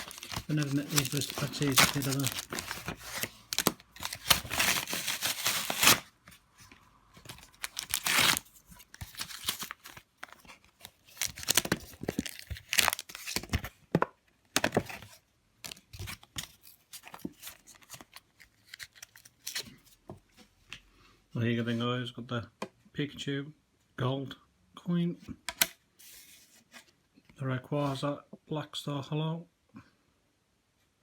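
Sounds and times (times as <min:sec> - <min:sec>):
blister pack ripping: 0:00.0 - 0:06.1, 0:07.3 - 0:10.0, 0:11.1 - 0:13.6
plastic packaging crinkling: 0:00.0 - 0:06.1, 0:07.2 - 0:13.7.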